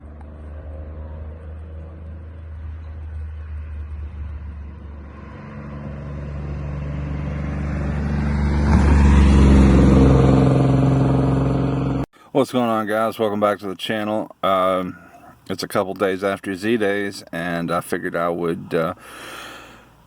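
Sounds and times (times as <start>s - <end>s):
car engine running: 0.0s - 12.1s.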